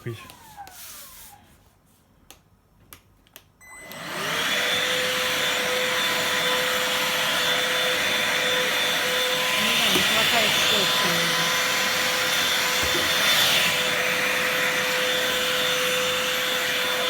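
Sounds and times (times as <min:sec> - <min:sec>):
handheld vacuum cleaner running: 0:03.7 - 0:17.0.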